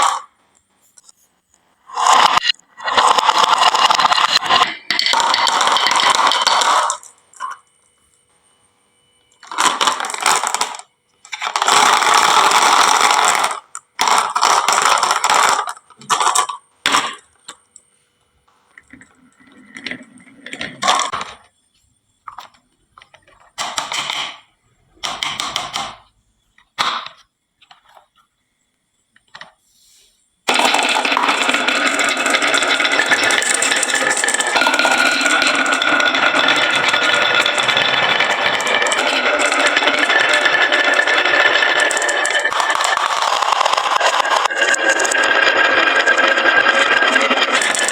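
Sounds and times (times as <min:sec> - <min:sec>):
marbles clattering down wooden run: 0:02.0 - 0:07.6, 0:09.4 - 0:17.3, 0:19.8 - 0:21.4, 0:30.5 - 0:47.9.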